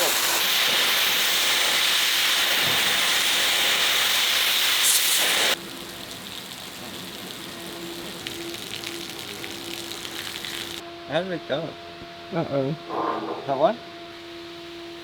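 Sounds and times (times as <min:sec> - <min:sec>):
cutting torch hissing: 0:00.0 - 0:10.8.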